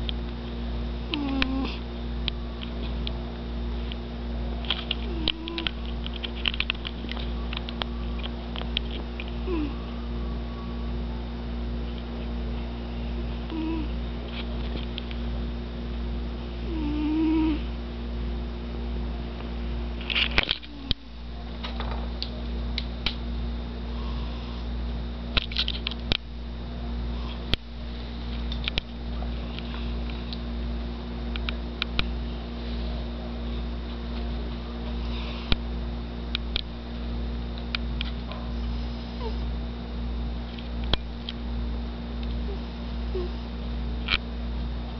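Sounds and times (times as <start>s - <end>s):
cat snoring: 1.1s - 1.8s, 5.1s - 5.6s, 9.4s - 9.8s, 13.5s - 13.9s, 16.6s - 17.7s
clicks and crackles: 1.1s - 9.4s, 14.2s - 15.2s, 19.4s - 23.2s, 25.3s - 26.4s, 27.3s - 30.5s, 31.3s - 32.1s, 36.3s - 36.8s, 40.4s - 41.4s, 44.0s - 44.3s.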